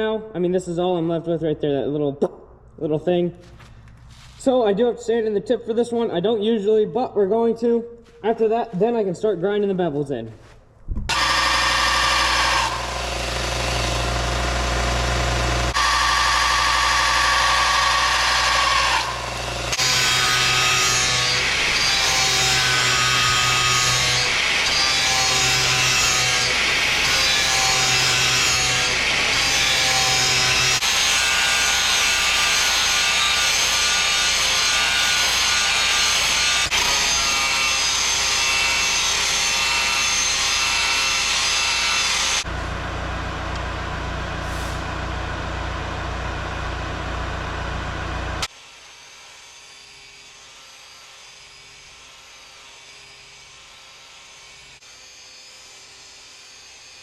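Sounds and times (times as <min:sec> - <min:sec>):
grinder grinding steel blade: 0:11.1 - 0:42.5.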